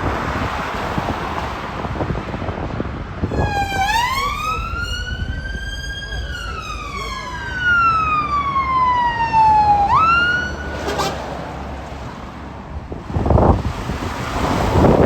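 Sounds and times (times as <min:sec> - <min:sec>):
rushing noise: 0:00.0 - 0:12.0
emergency vehicle siren wailing: 0:03.2 - 0:11.3.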